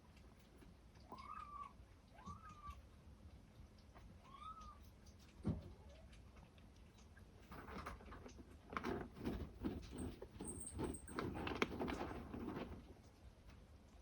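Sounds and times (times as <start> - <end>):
kittens scratching in cat litter: 7.0 - 13.7.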